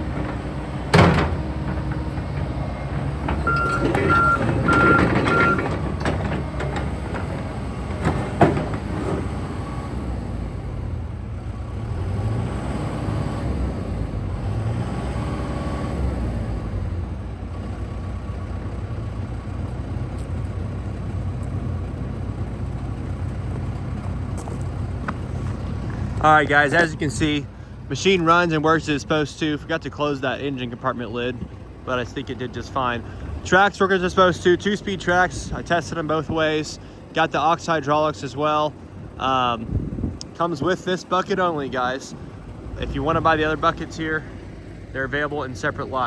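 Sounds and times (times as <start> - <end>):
excavator diesel engine running: 0.0 - 46.0
travel alarm beeping: 3.4 - 5.8.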